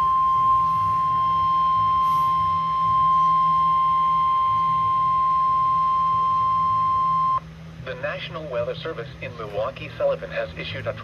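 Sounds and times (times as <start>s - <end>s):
high-pitched warning alarm tone: 0.0s - 7.4s.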